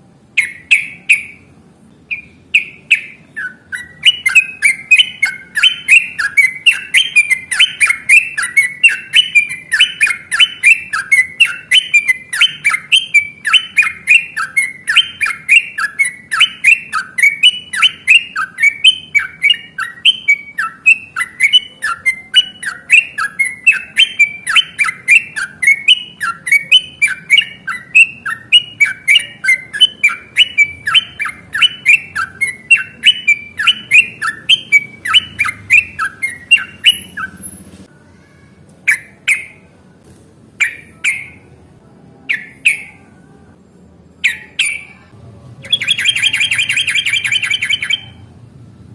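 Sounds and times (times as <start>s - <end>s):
bulbul singing bubbly phrases: 0.3s - 37.7s, 42.3s - 43.6s, 44.2s - 48.3s.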